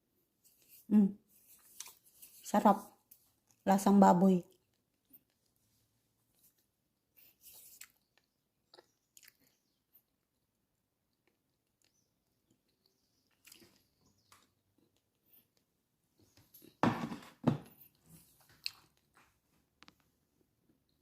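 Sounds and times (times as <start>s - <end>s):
chewing mouth clicks: 7.2s - 10.3s, 11.1s - 15.6s, 18.6s - 19.1s.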